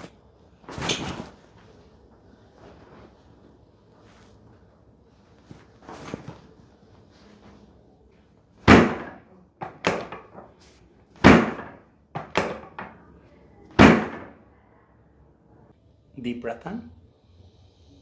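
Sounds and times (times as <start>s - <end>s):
loud body thumps: 8.6s - 13.0s, 13.8s - 14.4s
short knocks: 8.7s - 10.6s, 11.2s - 13.0s, 13.8s - 14.4s.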